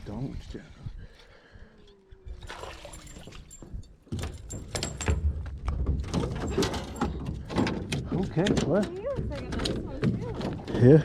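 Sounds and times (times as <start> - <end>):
knocks and rattles in a boat: 2.4 - 11.0.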